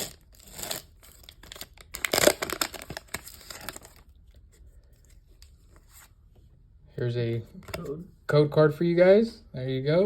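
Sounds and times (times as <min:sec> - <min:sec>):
foil wrapper tearing and crinkling: 0:00.0 - 0:04.0.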